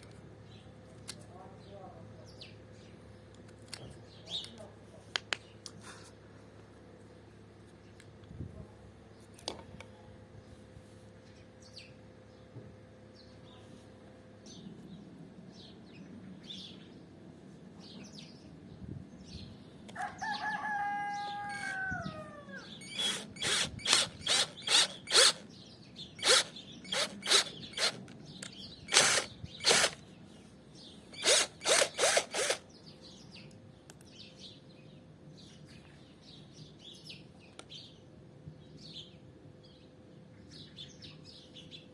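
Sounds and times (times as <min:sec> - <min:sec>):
small birds chirping: 0:00.4 - 0:05.8, 0:21.1 - 0:41.9
rooster crowing: 0:19.9 - 0:22.8
power drill bursts: 0:22.8 - 0:25.4, 0:26.2 - 0:28.1, 0:28.9 - 0:30.0, 0:31.2 - 0:32.6.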